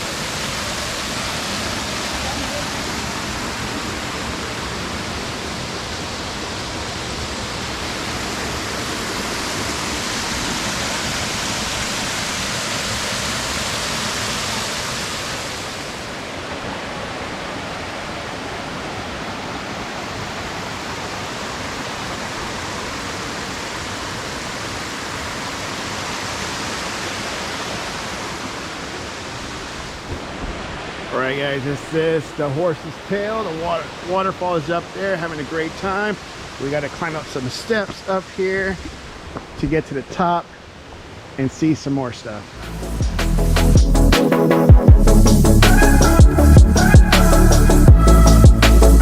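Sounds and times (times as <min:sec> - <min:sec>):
waterfall roar: 0:00.0 - 0:43.1.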